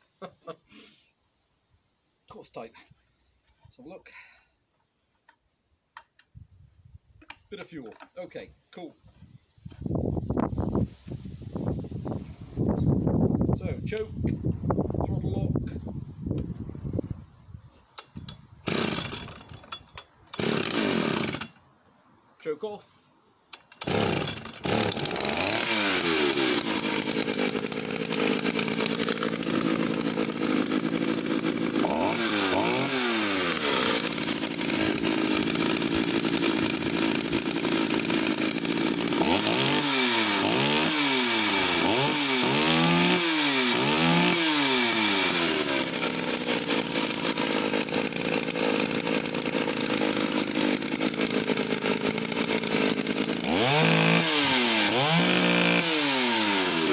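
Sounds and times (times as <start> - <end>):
two-stroke chainsaw revving: 18.7 - 19.5, 20.4 - 21.5, 23.8 - 56.9.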